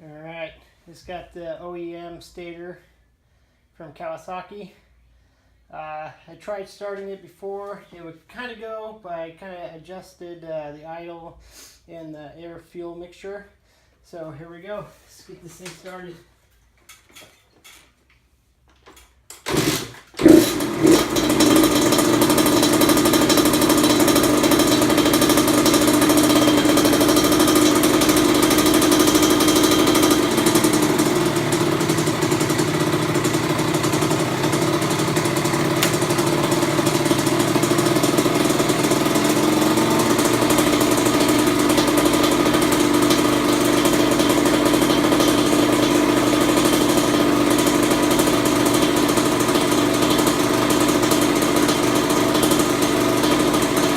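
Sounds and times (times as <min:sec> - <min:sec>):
motocross engine running: 0:19.5 - 0:53.9.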